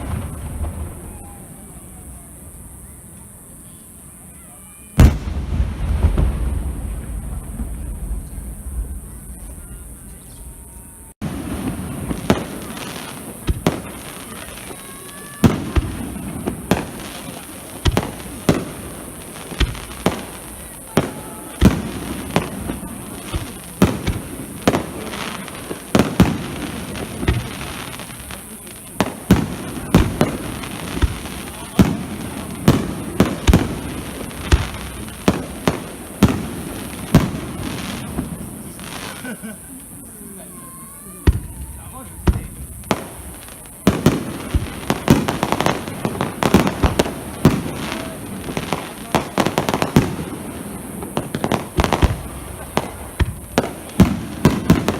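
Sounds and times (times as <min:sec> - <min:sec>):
fireworks bursting with sharp bangs: 0:00.0 - 0:54.9
low rumble after bangs: 0:05.0 - 0:11.0.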